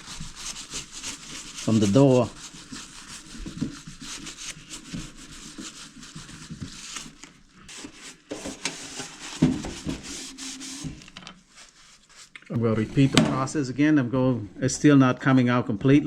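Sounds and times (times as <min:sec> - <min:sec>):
scrubbing on glass door: 0:00.0 - 0:12.3.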